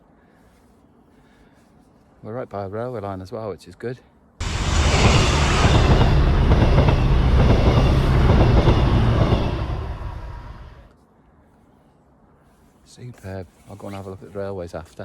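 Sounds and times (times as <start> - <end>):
train rumbling and clattering: 4.4 - 10.9.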